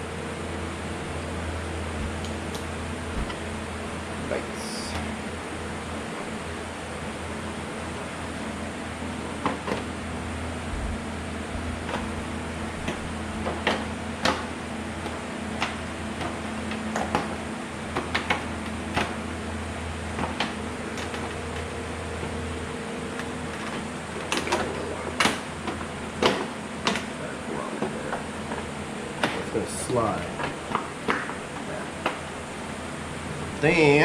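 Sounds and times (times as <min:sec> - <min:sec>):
low hum: 0:10.0 - 0:16.8
clicks and knocks of parts: 0:12.8 - 0:19.3, 0:20.1 - 0:22.4, 0:23.1 - 0:27.2, 0:27.8 - 0:29.6.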